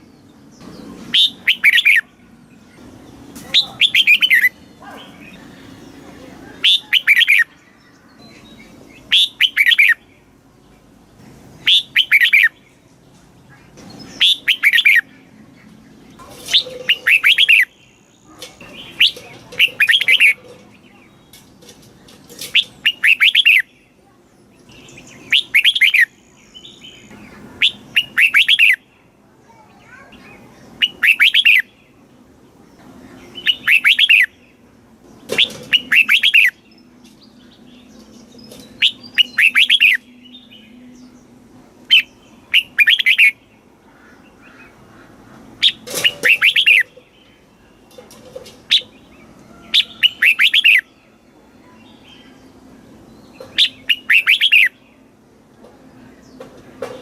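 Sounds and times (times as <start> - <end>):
bird singing bubbling phrases: 1.1 - 2.1, 3.5 - 6.0, 9.0 - 10.2, 11.6 - 12.8, 14.2 - 18.0, 18.8 - 20.4, 24.7 - 28.9, 29.9 - 31.8, 33.3 - 34.5, 38.8 - 41.1, 41.9 - 43.5, 45.6 - 47.8, 49.8 - 50.9, 53.4 - 54.8.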